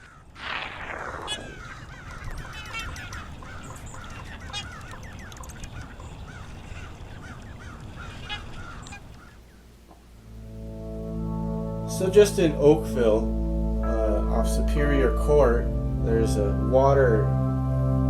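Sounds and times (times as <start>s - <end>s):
waterfowl honking: 0.0s - 10.5s.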